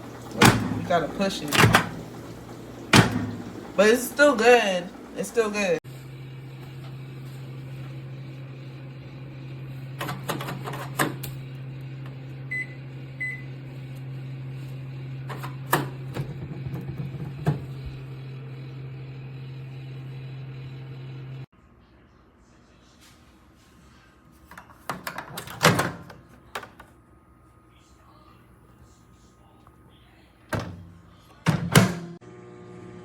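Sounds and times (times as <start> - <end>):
microwave oven humming: 0.0 - 22.6, 24.5 - 33.0.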